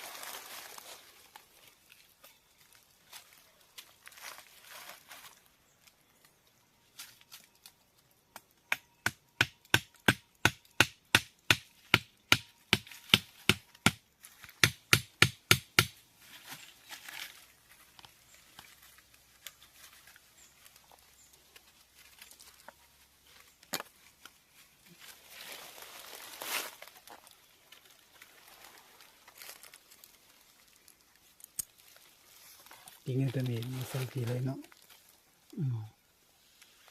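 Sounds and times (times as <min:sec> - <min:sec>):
rustling: 0:00.0 - 0:08.1, 0:16.1 - 0:35.5.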